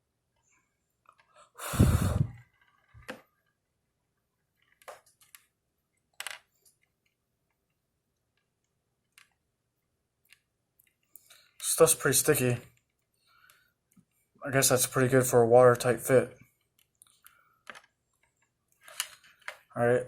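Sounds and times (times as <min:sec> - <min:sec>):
small clicks and taps: 0:06.2 - 0:09.4.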